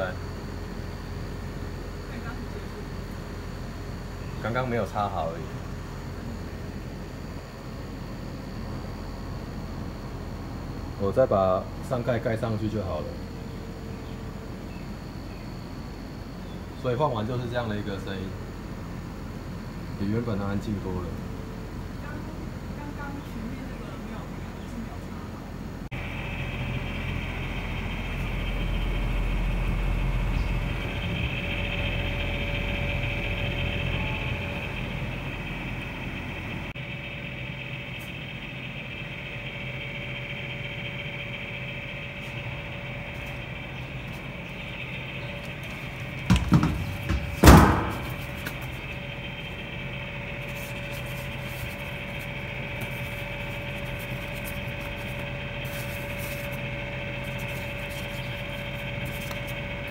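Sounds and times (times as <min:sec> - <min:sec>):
air conditioner humming: 0:00.0 - 0:59.9
sharp knocks: 0:46.2 - 0:48.2.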